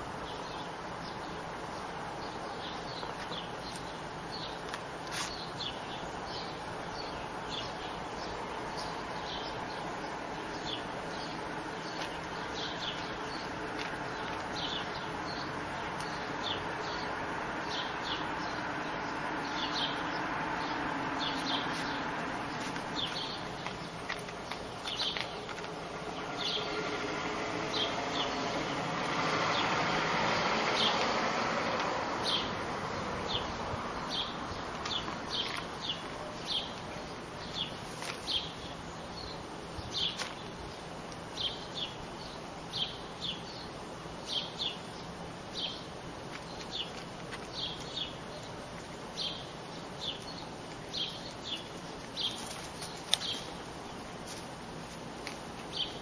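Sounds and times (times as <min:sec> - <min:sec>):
steady rushing noise: 0:00.0 - 0:36.0
small birds chirping: 0:00.0 - 0:56.0.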